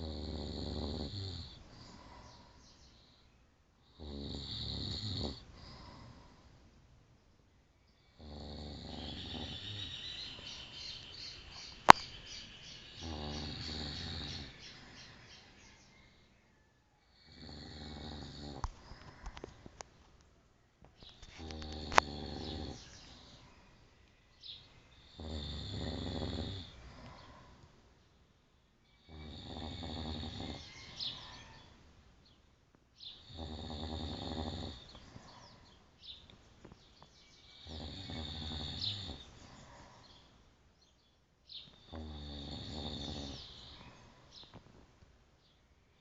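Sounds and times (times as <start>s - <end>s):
man snoring: 0.0s - 2.1s, 3.9s - 6.2s, 8.1s - 10.1s, 12.9s - 14.8s, 17.1s - 19.2s, 21.2s - 23.2s, 25.0s - 27.3s, 29.0s - 31.3s, 33.2s - 35.0s, 37.6s - 39.3s, 41.8s - 43.8s
quiet breaths: 0.0s - 46.0s.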